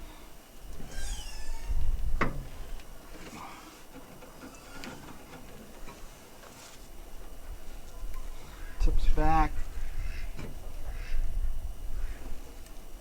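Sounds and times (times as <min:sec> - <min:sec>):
squeak falling in pitch: 0:00.8 - 0:02.0.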